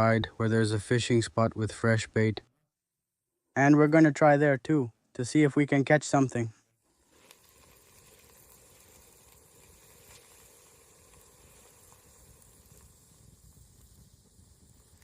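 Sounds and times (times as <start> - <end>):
faint outdoor hiss: 0.0 - 15.0.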